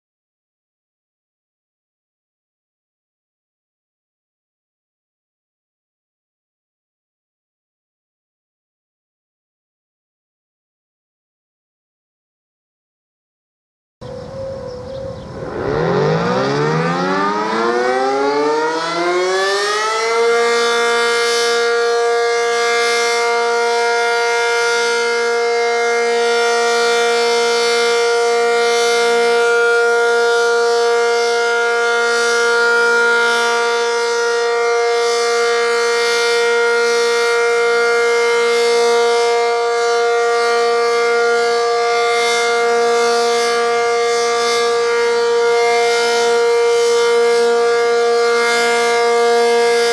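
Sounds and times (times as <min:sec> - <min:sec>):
warning siren winding up: 0:14.0 - 0:49.9.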